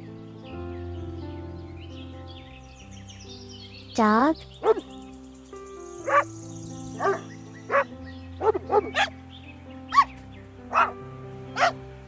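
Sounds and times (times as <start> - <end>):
background music with held notes: 0.0 - 12.0
dog barking: 4.6 - 4.9, 6.0 - 6.3, 7.0 - 9.1, 9.9 - 10.1, 10.7 - 11.0, 11.6 - 11.8.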